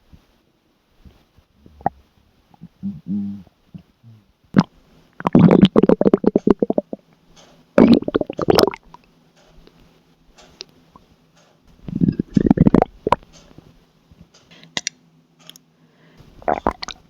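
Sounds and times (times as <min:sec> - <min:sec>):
stomach gurgling: 0:01.6 - 0:02.7, 0:04.5 - 0:07.0, 0:07.8 - 0:09.0, 0:11.8 - 0:13.2, 0:16.4 - 0:17.0.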